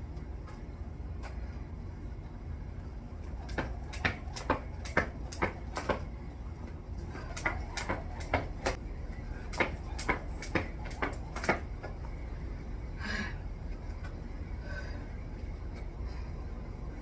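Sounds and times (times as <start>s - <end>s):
jump rope slapping ground: 3.2s - 12.3s.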